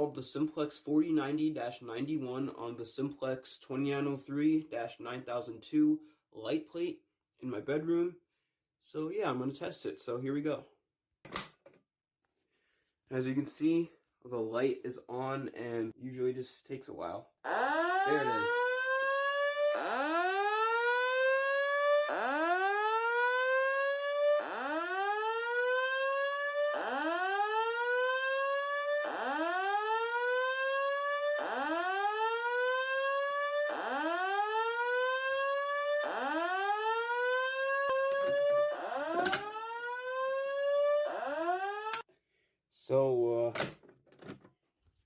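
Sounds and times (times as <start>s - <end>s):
fire alarm whooping: 17.4s - 42.1s.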